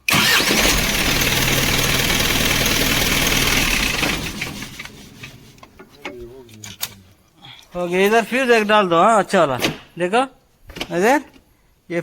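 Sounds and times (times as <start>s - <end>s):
diesel truck engine starting: 0.0s - 5.9s.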